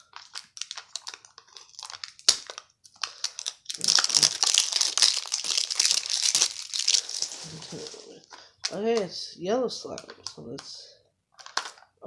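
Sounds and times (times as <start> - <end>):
packaging wrapper crinkling: 0.0 - 8.8, 11.3 - 12.0
wrapper snapping: 0.0 - 8.8, 11.4 - 11.8.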